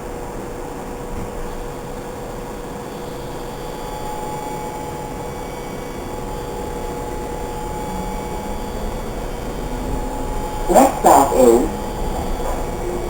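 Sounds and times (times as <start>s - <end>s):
subway car whine: 0.0s - 13.0s
subway car low rumble: 5.4s - 13.0s.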